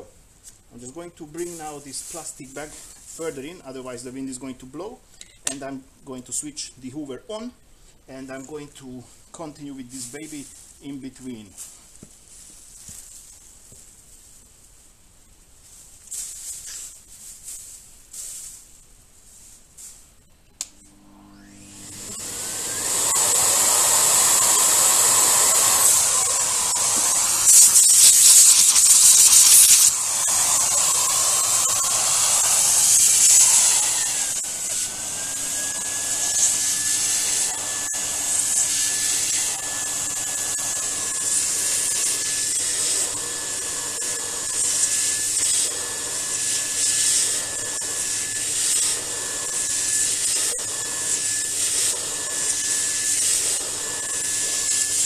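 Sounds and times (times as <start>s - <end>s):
vacuum hose airflow hiss: 0.0s - 4.0s, 19.3s - 55.0s
steady high whine: 20.4s - 55.0s
low hum: 20.5s - 22.5s.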